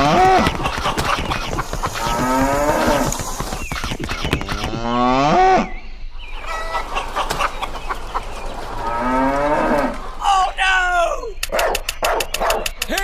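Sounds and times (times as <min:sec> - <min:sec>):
cattle mooing: 0:02.0 - 0:03.1, 0:08.8 - 0:10.0.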